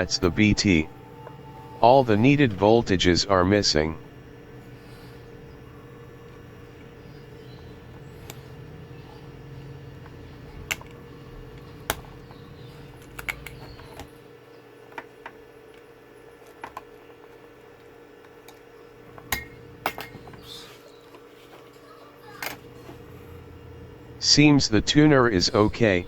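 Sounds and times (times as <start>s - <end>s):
faint steady hum: 0.0s - 26.0s
tools and parts clinking: 18.4s - 20.7s.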